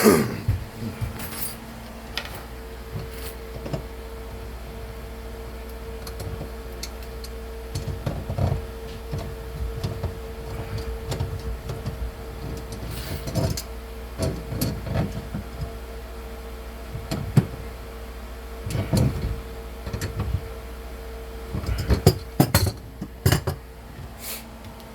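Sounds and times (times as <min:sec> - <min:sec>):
steady hum: 0:00.0 - 0:24.9
tools knocking and thumping: 0:21.6 - 0:23.6.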